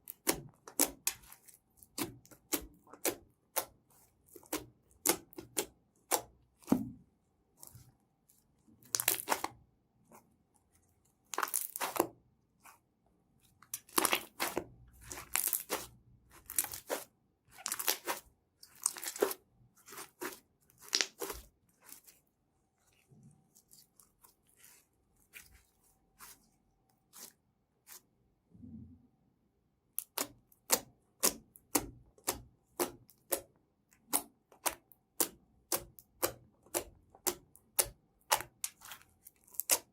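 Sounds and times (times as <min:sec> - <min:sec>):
slime crackling stretches: 0:08.8 - 0:09.6, 0:11.3 - 0:12.8, 0:13.7 - 0:22.2.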